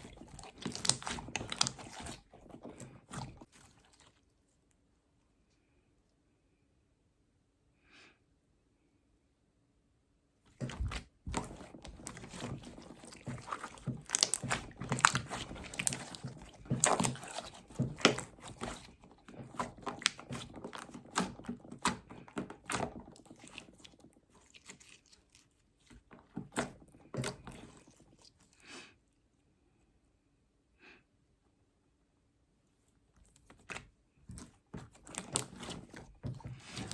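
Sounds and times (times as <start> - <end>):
slime squeezed by hand: 0.0 - 4.2, 10.6 - 28.8, 33.3 - 36.9.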